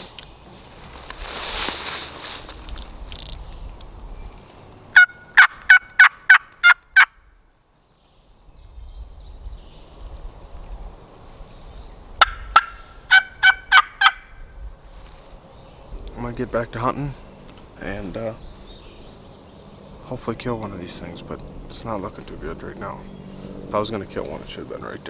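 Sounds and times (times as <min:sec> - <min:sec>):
turkey yelping: 0:05.0 - 0:07.1, 0:12.2 - 0:14.4.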